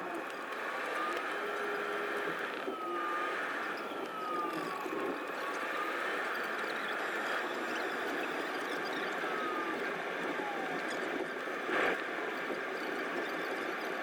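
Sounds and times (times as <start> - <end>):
faint falling whine: 0.0 - 14.0
aircraft cabin engine rush: 8.9 - 12.6.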